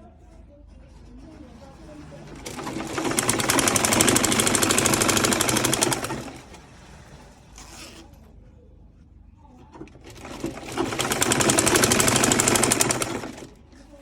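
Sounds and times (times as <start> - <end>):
sewing machine stitching: 1.4 - 8.2, 9.7 - 13.9.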